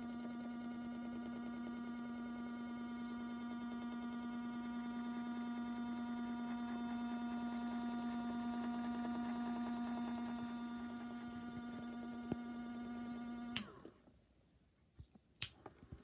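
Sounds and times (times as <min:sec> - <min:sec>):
washing machine electrical hum: 0:00.0 - 0:14.0.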